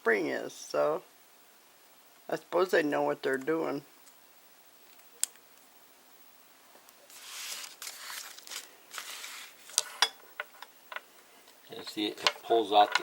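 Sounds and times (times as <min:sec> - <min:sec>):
battery scraping and rustling: 0:06.9 - 0:10.7.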